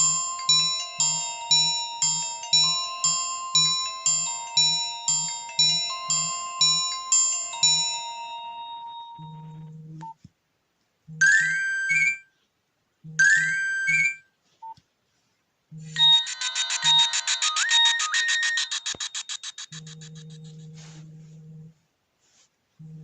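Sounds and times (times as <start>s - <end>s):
ringtone bursts with rising chirp: 0.0s - 9.8s, 15.9s - 20.6s
chiming ringtone melody: 0.0s - 9.9s, 15.9s - 20.6s
ringtone of fast pulsing notes: 0.0s - 10.0s, 15.8s - 20.9s.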